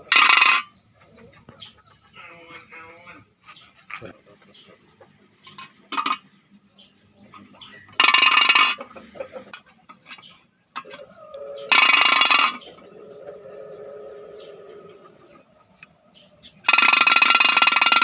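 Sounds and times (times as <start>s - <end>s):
coin rattling against tin can: 16.7s - 18.0s.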